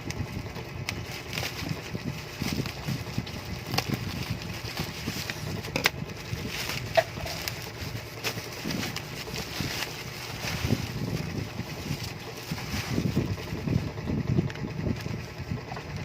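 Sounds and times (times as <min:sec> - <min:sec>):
packaging handling clicks and taps: 0:03.6 - 0:10.6.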